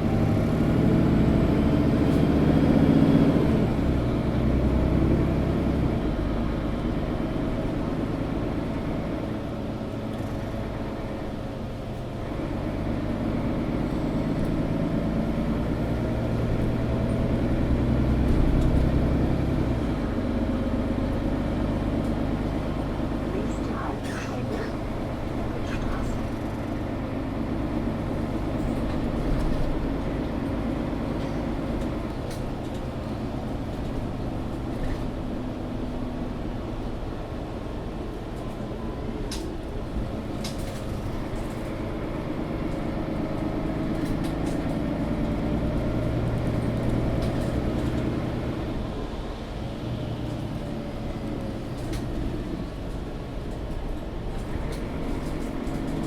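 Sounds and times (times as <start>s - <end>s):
bus diesel engine running: 0.0s - 56.0s.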